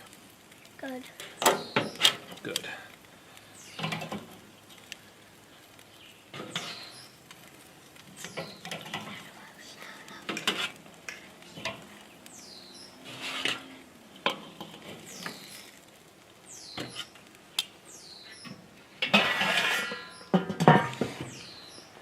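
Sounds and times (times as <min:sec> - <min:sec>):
metal utensils clinking on grill grate: 0:03.8 - 0:04.4, 0:19.0 - 0:21.0.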